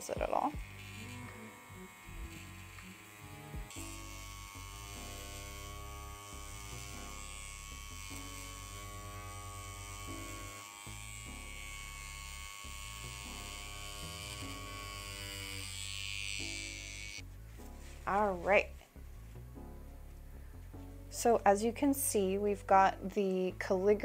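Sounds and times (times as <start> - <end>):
tattoo pen motor buzzing: 0.0 - 17.2.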